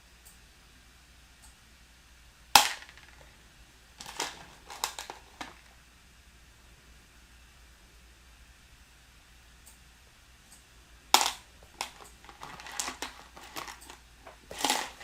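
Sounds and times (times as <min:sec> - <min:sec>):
plastic construction pieces clicking: 0:02.6 - 0:03.3, 0:04.0 - 0:05.7, 0:11.2 - 0:15.0.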